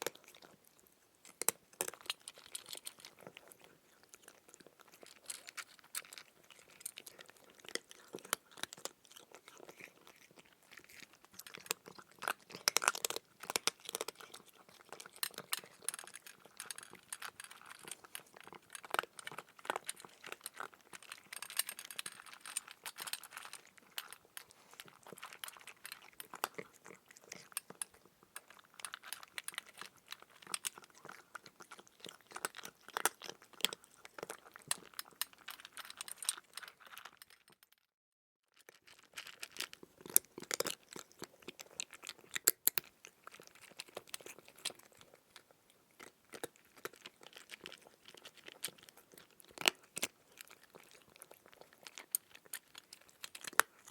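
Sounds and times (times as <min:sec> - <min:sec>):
crunchy chewing: 0:00.0 - 0:37.6, 0:38.6 - 0:53.9.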